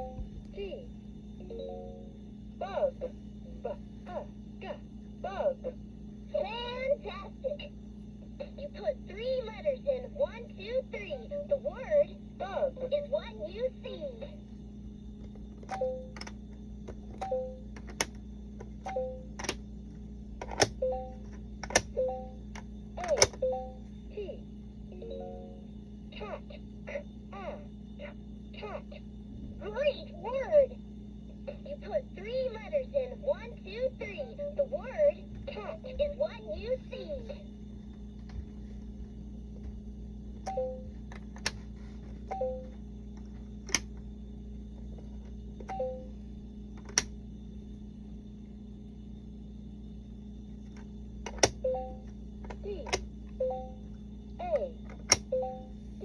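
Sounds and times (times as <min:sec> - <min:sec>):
low electronic hum: 0:00.0 - 0:56.0
plastic clicks: 0:15.3 - 0:19.6, 0:20.4 - 0:20.8, 0:21.6 - 0:21.9, 0:22.6 - 0:23.4, 0:41.1 - 0:41.6, 0:43.7 - 0:44.0, 0:46.8 - 0:47.1, 0:50.8 - 0:51.6, 0:52.9 - 0:53.1, 0:54.9 - 0:55.3
plastic pieces clicking in slots: 0:19.4 - 0:19.6, 0:21.6 - 0:21.9, 0:23.0 - 0:23.4.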